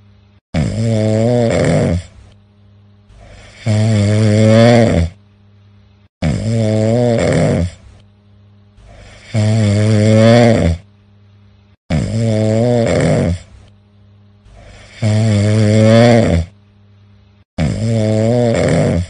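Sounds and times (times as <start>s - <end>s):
loud pitched snoring: 0.5s - 2.3s, 3.1s - 5.2s, 6.2s - 8.0s, 8.8s - 10.9s, 11.9s - 13.6s, 14.5s - 16.6s, 17.6s - 19.0s
quiet breaths: 1.8s - 4.3s, 7.5s - 10.0s, 13.2s - 19.0s.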